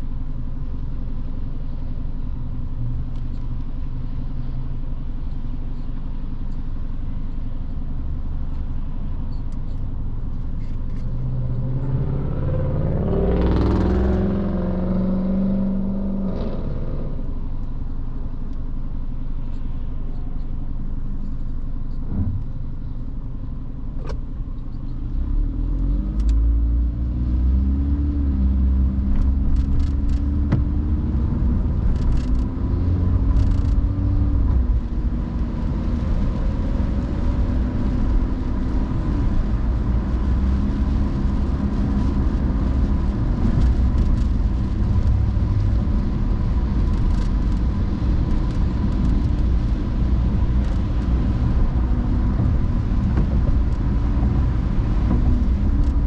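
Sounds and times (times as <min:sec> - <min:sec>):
car engine accelerating: 0:08.8 - 0:18.3, 0:24.1 - 0:56.0
tyre noise on wet road: 0:25.0 - 0:56.0.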